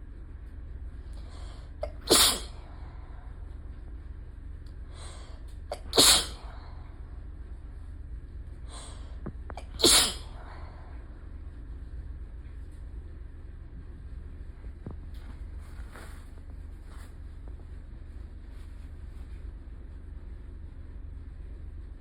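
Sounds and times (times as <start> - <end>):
person sneezing: 1.8 - 2.6, 5.7 - 6.5, 9.6 - 10.4.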